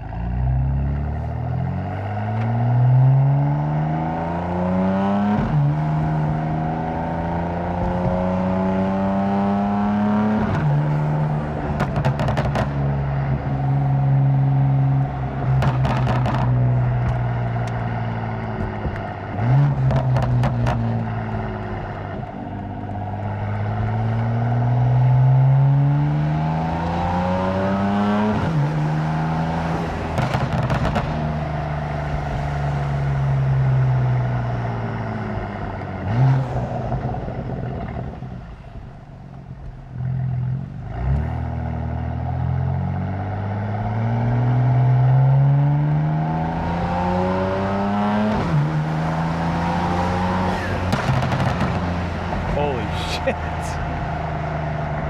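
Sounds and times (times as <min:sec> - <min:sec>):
car exhaust revving and shifting: 0:00.0 - 0:55.0
exhaust pops and crackles: 0:11.6 - 0:13.4, 0:15.4 - 0:22.3, 0:30.0 - 0:32.5, 0:50.5 - 0:53.9.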